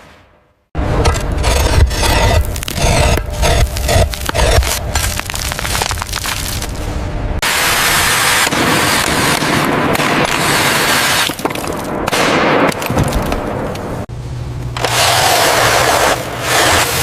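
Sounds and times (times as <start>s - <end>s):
loud rushing hiss: 7.4s - 9.3s.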